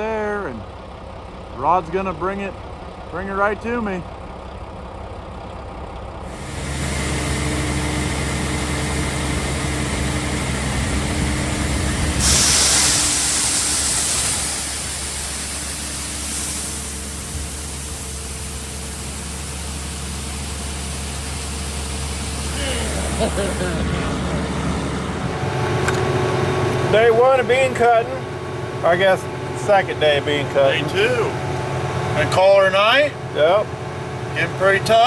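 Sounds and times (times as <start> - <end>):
heavy farm machinery engine running: 0.0 - 35.0
loud rushing hiss: 6.3 - 24.4.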